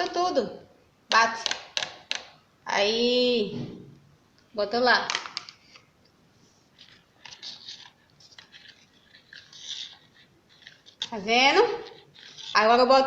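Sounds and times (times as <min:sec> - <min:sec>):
spoon scraping in a bowl: 0:06.8 - 0:13.0.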